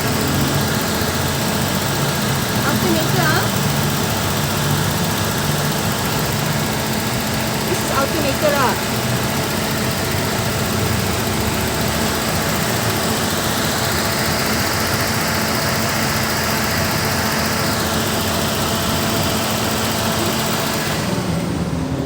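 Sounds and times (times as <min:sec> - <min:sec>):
car engine idling: 0:00.0 - 0:22.0.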